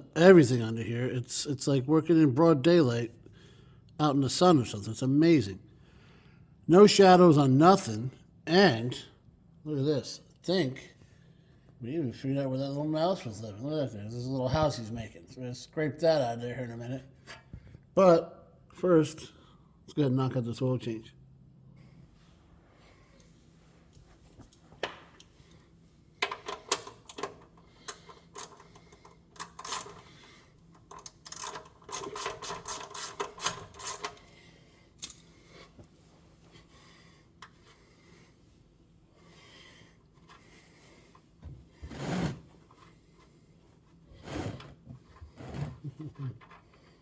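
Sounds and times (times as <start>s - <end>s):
hand tools clicking on metal: 30.7s - 34.2s, 35.0s - 35.3s.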